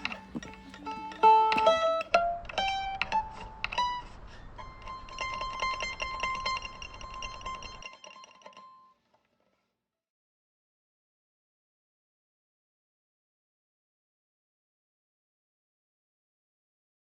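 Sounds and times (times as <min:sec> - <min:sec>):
plucked string instrument: 0:00.0 - 0:09.5.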